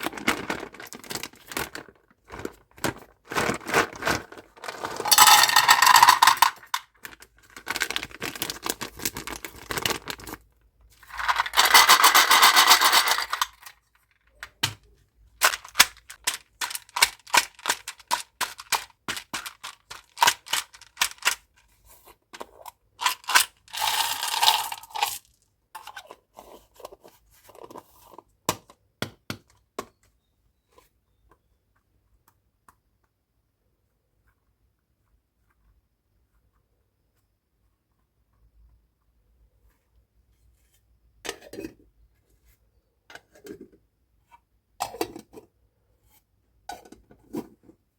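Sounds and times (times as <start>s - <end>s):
plastic wrappers crinkling: 0.0s - 14.0s, 15.4s - 21.6s, 23.0s - 25.4s.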